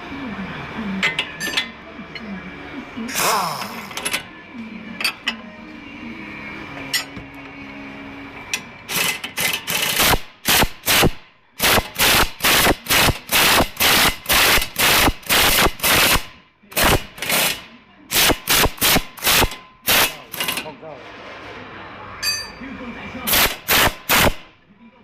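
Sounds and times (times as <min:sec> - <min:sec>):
air impact wrench hammering: 0:08.9 - 0:20.6, 0:23.3 - 0:24.5.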